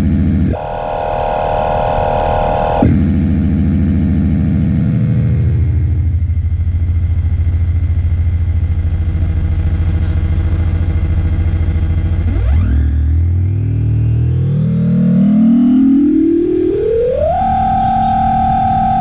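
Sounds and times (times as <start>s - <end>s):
rising pitch sweep: 0.0s - 5.8s, 10.7s - 19.0s
low pulsing electronic drone: 0.0s - 19.0s.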